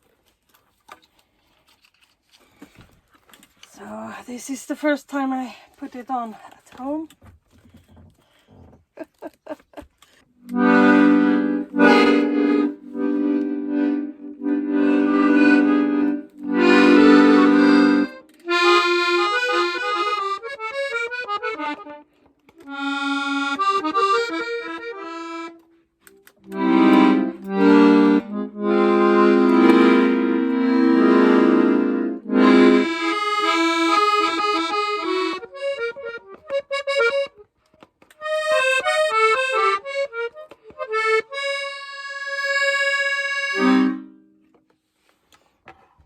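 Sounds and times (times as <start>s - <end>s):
accordion playing: 10.4s - 44.4s.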